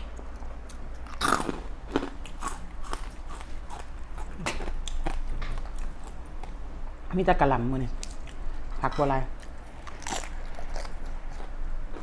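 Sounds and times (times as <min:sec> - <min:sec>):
person chewing and biting food: 0:00.1 - 0:06.6, 0:09.4 - 0:12.0.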